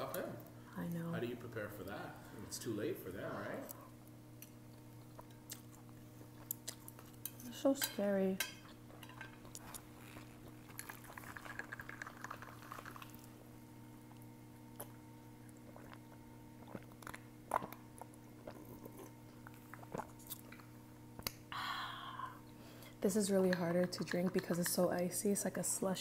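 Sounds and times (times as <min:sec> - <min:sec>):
steady low hum: 0:00.0 - 0:26.0
soft chewing: 0:03.6 - 0:07.5, 0:08.6 - 0:13.4, 0:14.0 - 0:21.4
crackly slurping: 0:09.4 - 0:13.4, 0:14.1 - 0:21.4.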